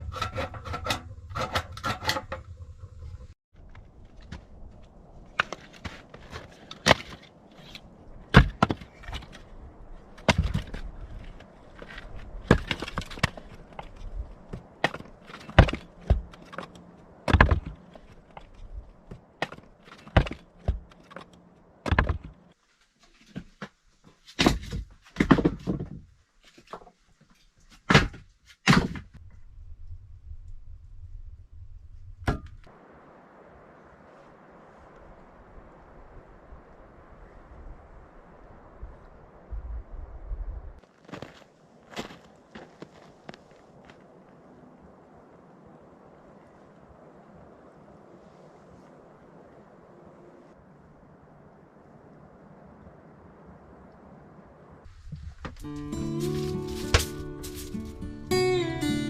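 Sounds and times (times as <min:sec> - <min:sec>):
wooden knocks and thuds: 0:11.8 - 0:16.6, 0:17.3 - 0:17.8, 0:19.1 - 0:21.2, 0:21.8 - 0:22.4, 0:24.4 - 0:26.9, 0:27.8 - 0:29.2.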